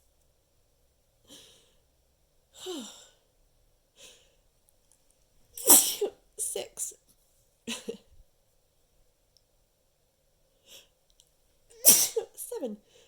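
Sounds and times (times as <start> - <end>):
person sneezing: 5.6 - 6.2, 11.8 - 12.4.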